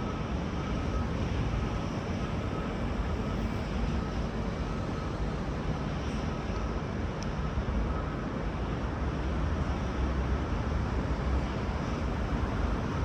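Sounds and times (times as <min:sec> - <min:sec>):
diesel railcar engines rumbling: 0:00.0 - 0:13.0.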